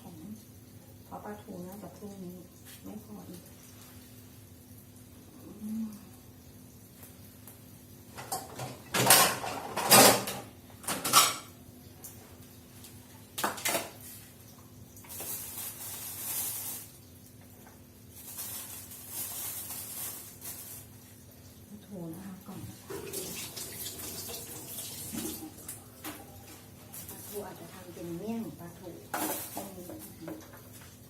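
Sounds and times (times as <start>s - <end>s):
dishes clattering: 8.2s - 11.6s.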